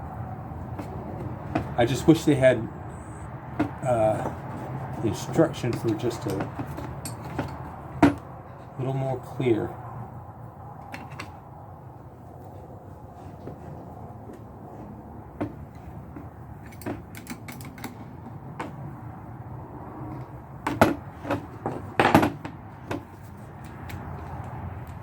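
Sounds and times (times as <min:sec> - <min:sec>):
rivet tool metal clicks: 0:16.6 - 0:18.0.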